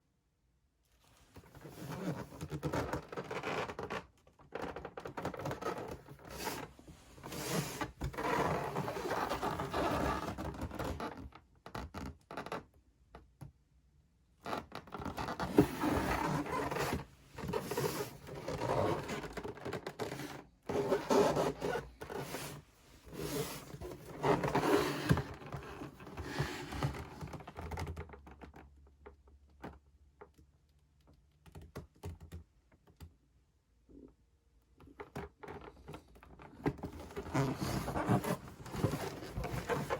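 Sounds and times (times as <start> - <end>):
packaging scraping and rustling: 36.9 - 39.9.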